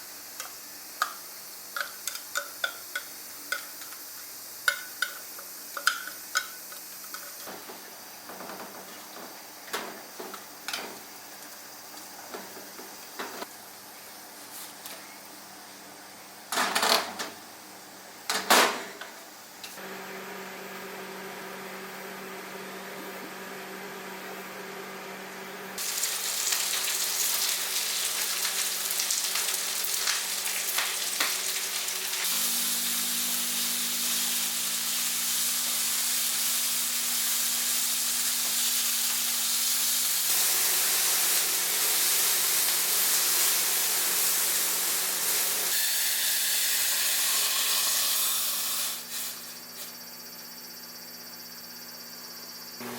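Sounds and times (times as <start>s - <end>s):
food sizzling in a hot pan: 0.0s - 13.2s, 25.8s - 49.6s.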